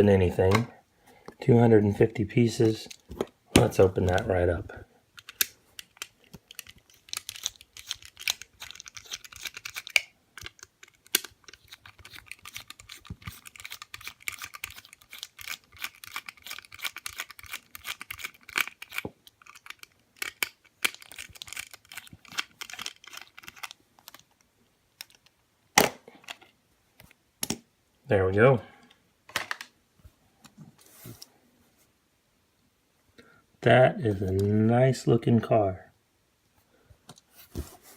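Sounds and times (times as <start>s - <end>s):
plastic packaging crinkling: 5.8s - 24.4s
sharp plastic crack: 25.7s - 26.1s.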